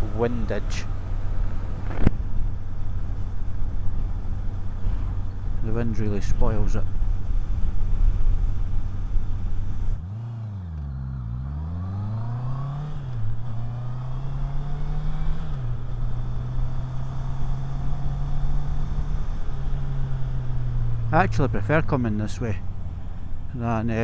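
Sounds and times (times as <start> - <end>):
motorcycle engine accelerating: 0.0 - 24.0
wind noise: 1.2 - 10.0.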